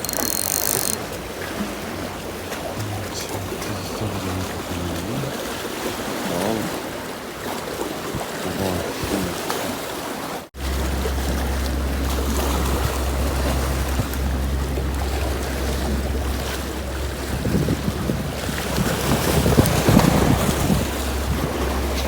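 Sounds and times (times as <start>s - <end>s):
sea waves: 0.0s - 22.0s
steady low rumble: 2.4s - 5.5s, 10.6s - 22.0s
wind buffeting microphone: 10.6s - 22.0s.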